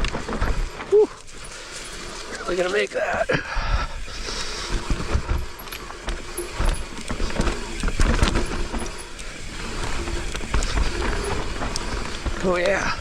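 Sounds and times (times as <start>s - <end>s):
bike rattling over bumps: 0.0s - 13.0s
bike tyres rolling over dirt: 0.0s - 13.0s.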